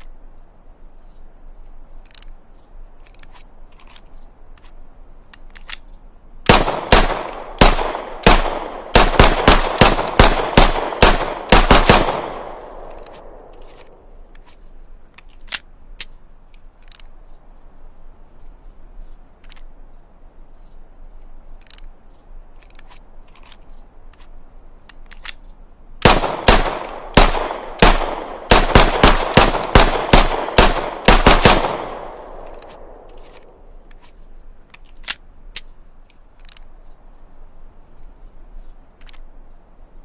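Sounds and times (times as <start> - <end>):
gunshot echo: 6.5 - 13.5, 26.0 - 33.1
pistol gunshots: 6.5 - 13.6, 26.0 - 33.4.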